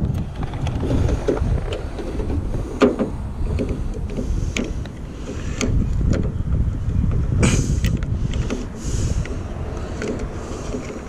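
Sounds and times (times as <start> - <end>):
low steady rumble: 0.0 - 11.0
tools clicking and knocking on metal: 9.9 - 11.0.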